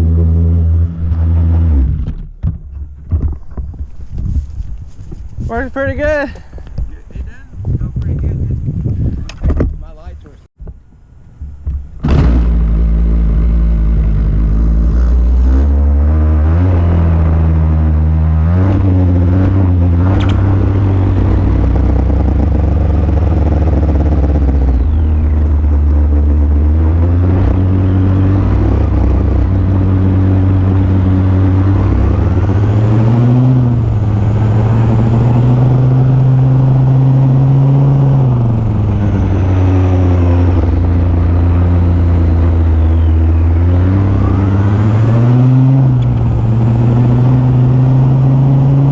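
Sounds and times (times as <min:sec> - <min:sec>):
small engine revving: 0:12.0 - 0:48.9.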